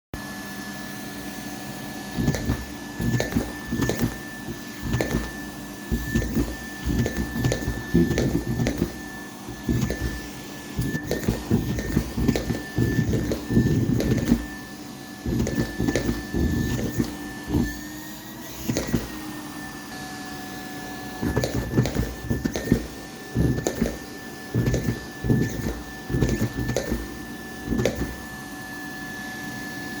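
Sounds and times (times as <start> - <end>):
vacuum cleaner motor whine: 0.2 - 30.0
sock fluttering in vacuum nozzle: 2.1 - 17.8, 18.6 - 19.3, 21.2 - 28.3.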